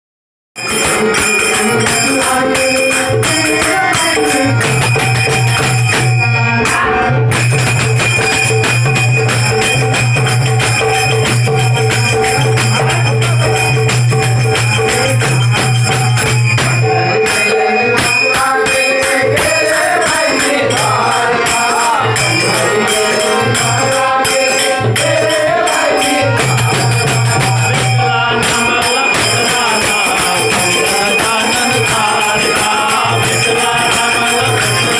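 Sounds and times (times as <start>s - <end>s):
devotional song with drum: 0.6s - 34.9s.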